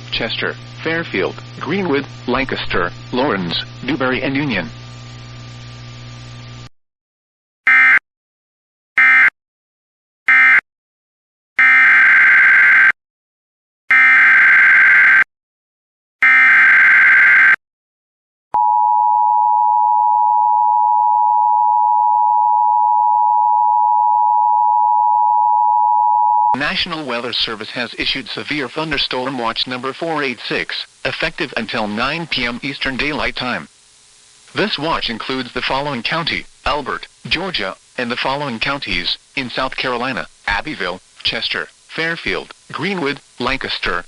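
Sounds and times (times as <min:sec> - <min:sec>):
faint hum: 0:00.0 - 0:06.7, 0:26.5 - 0:44.0.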